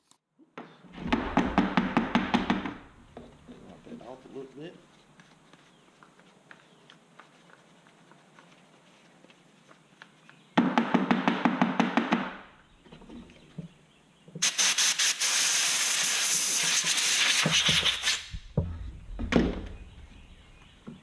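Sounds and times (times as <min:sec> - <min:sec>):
knocks: 0:01.0 - 0:03.4
compressed air blow gun hissing: 0:14.4 - 0:18.4.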